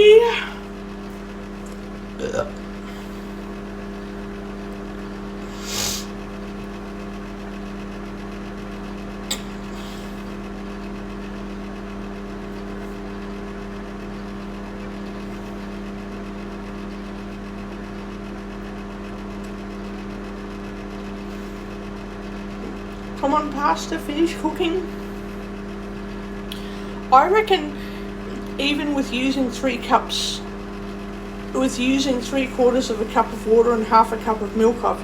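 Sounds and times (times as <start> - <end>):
microwave oven humming: 0.0 - 35.0
short hiss: 5.5 - 6.1.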